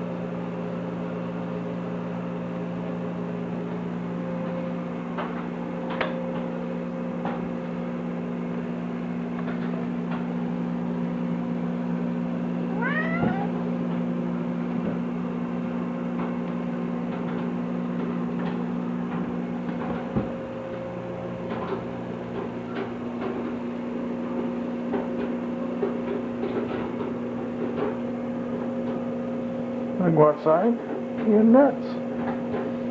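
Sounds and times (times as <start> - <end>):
electrical hum: 0.0 - 32.9
cat meowing: 12.7 - 13.6.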